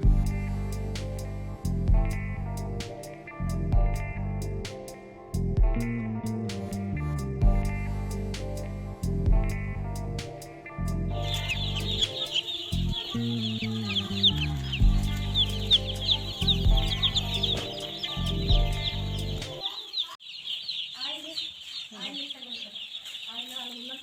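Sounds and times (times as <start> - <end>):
background music with bass line: 0.0 - 19.6
chicks peeping: 11.1 - 24.0.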